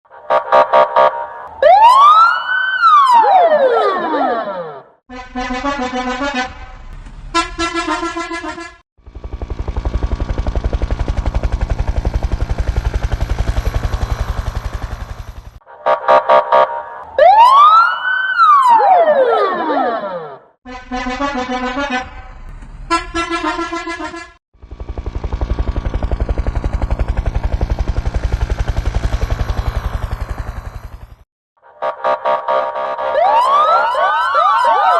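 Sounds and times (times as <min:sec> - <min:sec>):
bus horn: 0:00.1 - 0:01.6, 0:04.7 - 0:08.8, 0:15.7 - 0:17.2, 0:20.2 - 0:24.4, 0:31.6 - 0:33.5
helicopter rotor chopping: 0:09.0 - 0:15.6, 0:24.6 - 0:31.2.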